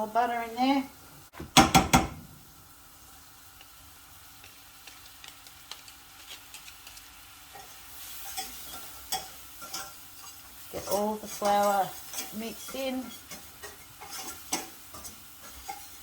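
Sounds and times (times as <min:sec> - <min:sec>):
utensil knocking against pan: 0:01.5 - 0:02.3
roux sizzling in a frying pan: 0:02.2 - 0:16.0
stirring scrapes and taps: 0:04.4 - 0:16.0.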